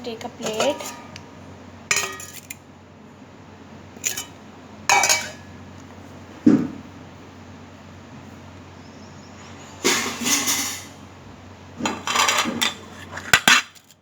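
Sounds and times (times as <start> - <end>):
plate clinking among dishes: 1.9 - 2.6, 4.9 - 5.5.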